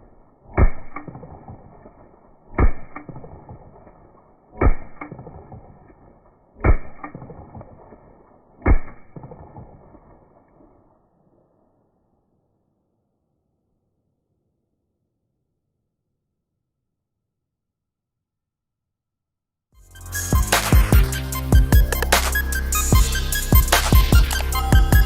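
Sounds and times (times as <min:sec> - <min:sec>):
slowed-down gunshots: 0:00.0 - 0:12.0.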